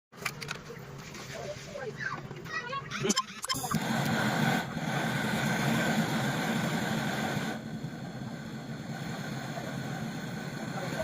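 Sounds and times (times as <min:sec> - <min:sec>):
torch flame hissing: 0:03.7 - 0:11.0.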